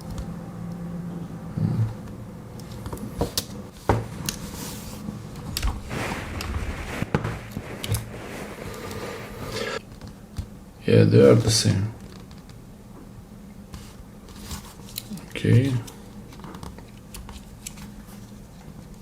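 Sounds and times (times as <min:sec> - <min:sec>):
soft rustling: 0:04.4 - 0:09.8.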